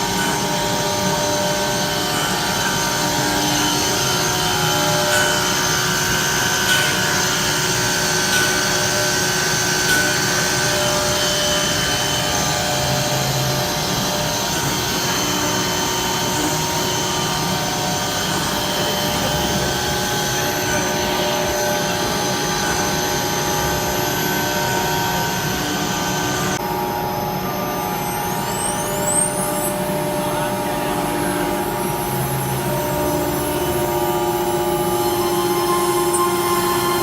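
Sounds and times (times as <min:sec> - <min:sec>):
cnc router whirring: 0:00.0 - 0:37.0.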